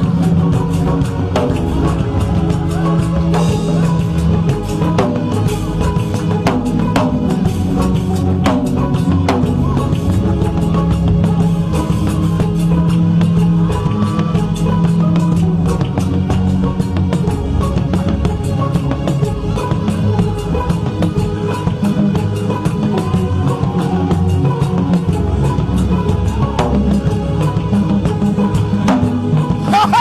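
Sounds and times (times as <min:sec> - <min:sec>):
bass: 0:00.0 - 0:30.0
drum kit beating: 0:00.0 - 0:30.0
guitar: 0:00.0 - 0:30.0.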